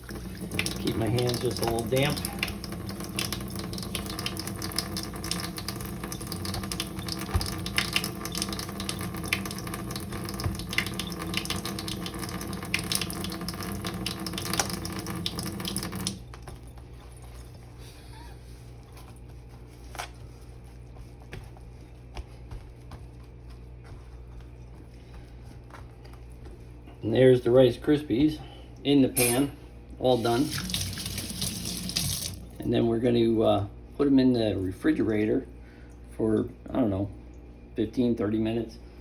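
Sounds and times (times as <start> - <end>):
faucet running into a sink: 0.0 - 16.2, 30.1 - 32.7.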